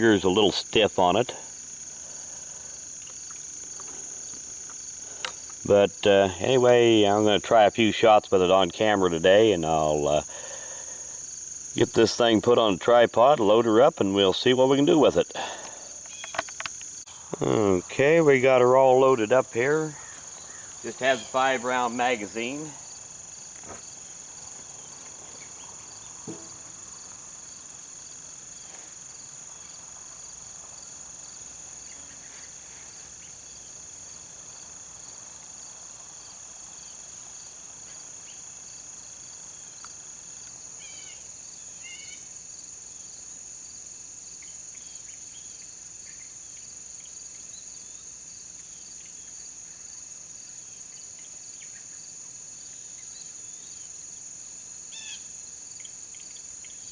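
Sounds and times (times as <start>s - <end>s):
insect chorus: 0.0s - 56.9s.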